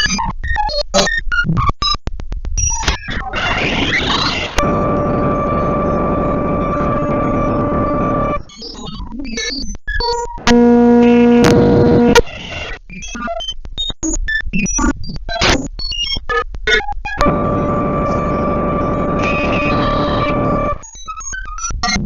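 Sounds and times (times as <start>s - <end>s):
loud buzzing tone: 4.5s - 8.5s, 10.4s - 12.3s, 17.2s - 20.8s
radio crackles: 10.2s - 12.8s
radio static hiss with whistle: 10.4s - 12.8s.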